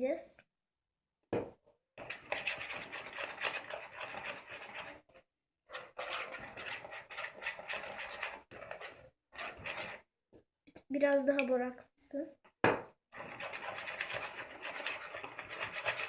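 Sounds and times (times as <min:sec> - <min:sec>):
spoon scraping plastic bowl: 0:02.0 - 0:10.1, 0:13.1 - 0:16.0.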